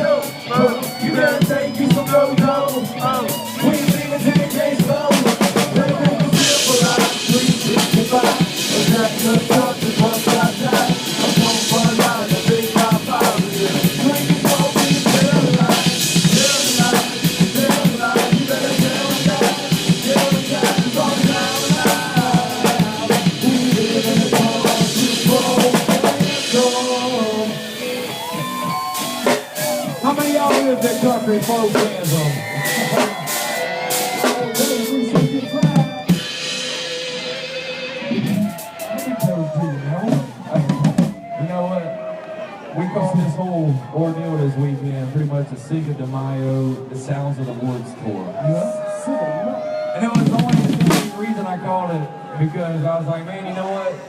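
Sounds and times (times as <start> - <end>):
live band music: 0.0 - 52.4
drum kit hits: 3.9 - 27.5, 50.2 - 51.3.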